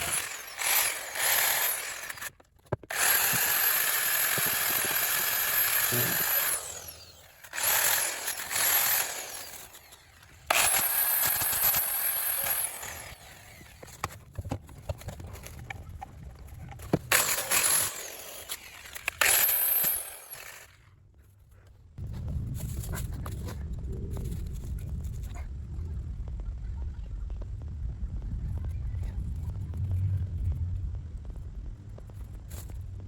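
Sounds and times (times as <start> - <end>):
handheld power tool whining: 0.0 - 15.6, 16.7 - 20.8.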